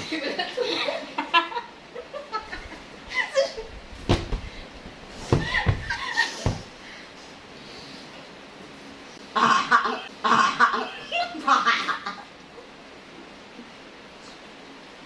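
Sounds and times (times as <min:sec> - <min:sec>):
dull thumps: 0:04.0 - 0:06.8.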